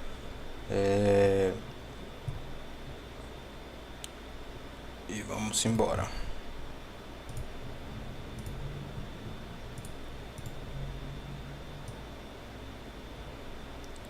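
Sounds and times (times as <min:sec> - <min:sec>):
faint high-pitched whine: 0:00.0 - 0:14.0
low steady hum: 0:00.0 - 0:14.0
computer mouse clicks: 0:07.2 - 0:07.5, 0:08.4 - 0:08.6, 0:09.7 - 0:10.6, 0:13.8 - 0:14.0.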